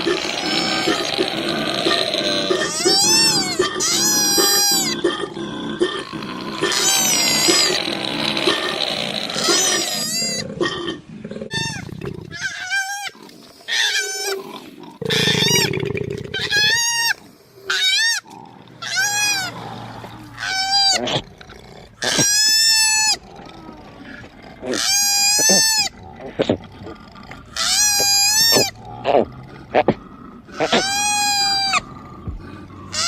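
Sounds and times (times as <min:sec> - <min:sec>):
koala squealing: 0:00.0 - 0:05.0, 0:06.6 - 0:10.4, 0:11.5 - 0:14.4, 0:16.3 - 0:19.6, 0:20.4 - 0:21.2, 0:22.0 - 0:23.2, 0:24.7 - 0:26.0, 0:27.6 - 0:28.8, 0:30.5 - 0:31.9
rough low grunting: 0:00.0 - 0:12.3, 0:25.9 - 0:27.6, 0:28.6 - 0:33.0.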